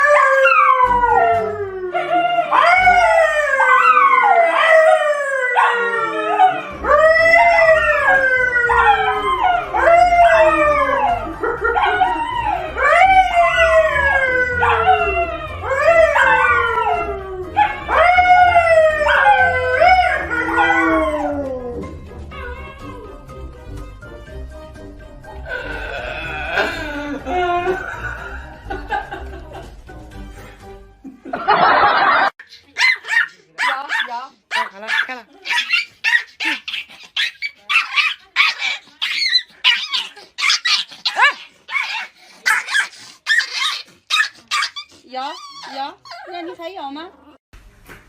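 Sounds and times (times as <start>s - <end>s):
animal howling: 0.0s - 23.3s, 25.4s - 28.6s.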